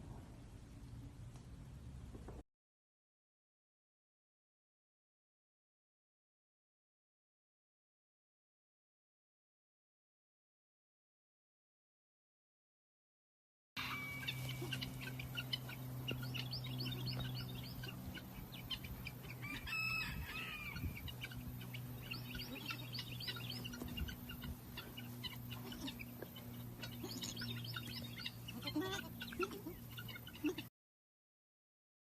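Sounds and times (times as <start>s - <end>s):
chickens chirping: 13.8s - 30.7s
steady low hum: 13.8s - 30.7s.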